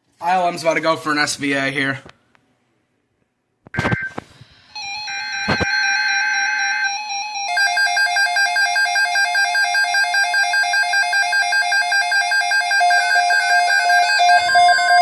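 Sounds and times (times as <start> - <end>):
warbling two-tone alert signal: 4.8 - 15.0.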